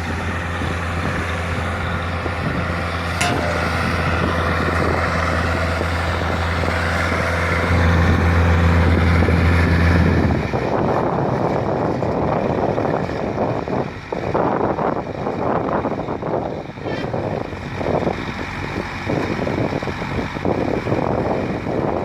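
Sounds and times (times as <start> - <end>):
engine humming: 0.0 - 14.0.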